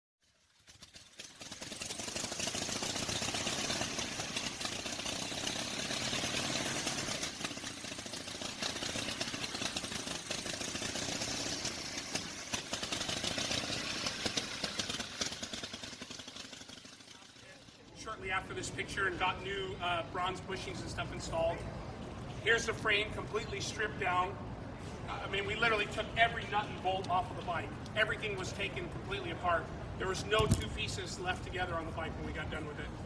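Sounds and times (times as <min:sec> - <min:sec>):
motorcycle engine idling: 0:00.4 - 0:18.0.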